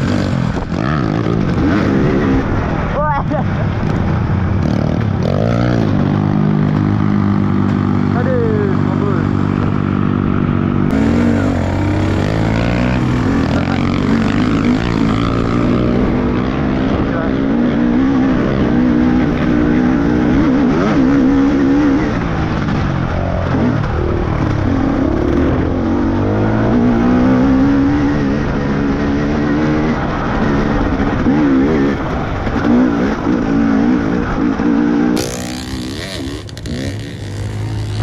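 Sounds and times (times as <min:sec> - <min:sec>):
motorcycle engine revving: 0:00.0 - 0:38.0.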